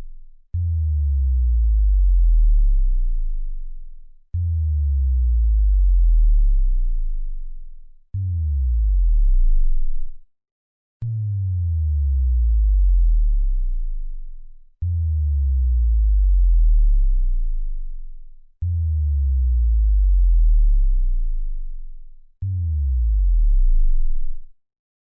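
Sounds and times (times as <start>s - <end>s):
synthesized bass drop: 0.6s - 3.6s, 4.4s - 7.3s, 8.2s - 10.2s, 11.0s - 18.0s, 18.6s - 21.8s, 22.4s - 24.5s.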